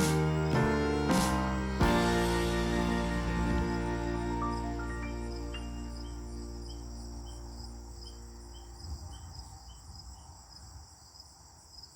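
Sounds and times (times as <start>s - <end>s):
background music: 0.0s - 8.5s
low rumble: 0.0s - 8.6s
crickets chirping: 0.0s - 11.9s.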